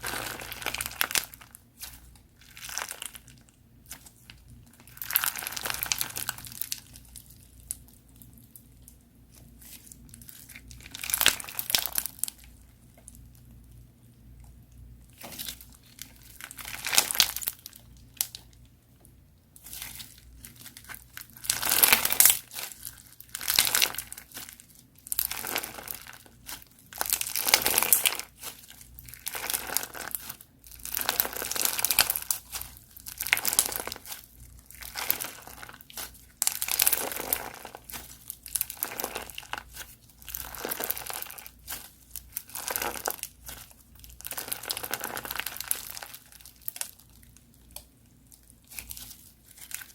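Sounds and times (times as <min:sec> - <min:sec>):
crunchy slime crackling: 0:00.0 - 0:13.8, 0:15.0 - 0:49.9.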